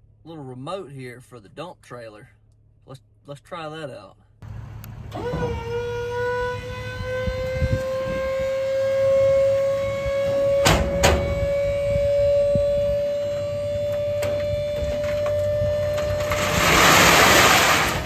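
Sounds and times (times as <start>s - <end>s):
hydraulic pump whining: 4.4s - 18.0s
sharp knocks: 10.6s - 11.4s.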